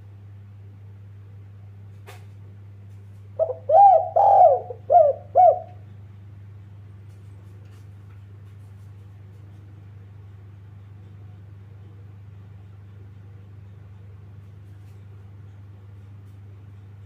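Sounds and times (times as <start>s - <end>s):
steady low hum: 0.0s - 17.0s
dove cooing: 3.4s - 5.9s.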